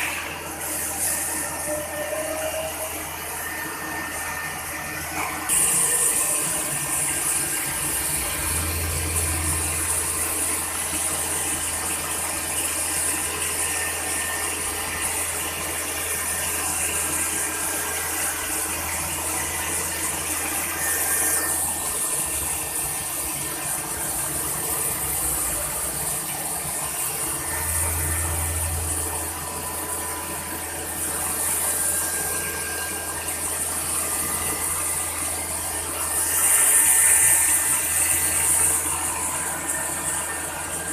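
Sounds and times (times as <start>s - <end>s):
cnc machine running: 0.0s - 40.9s
low hum: 23.9s - 31.2s.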